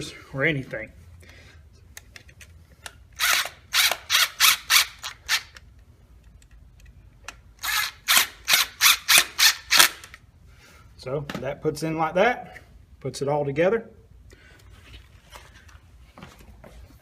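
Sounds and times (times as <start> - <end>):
rasping ratchet-like strokes: 7.6 - 10.0.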